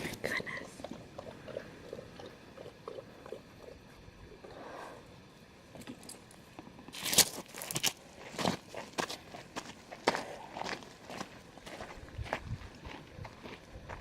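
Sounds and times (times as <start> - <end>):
dog lapping water: 0.6 - 3.8
loud crunch: 7.0 - 11.9.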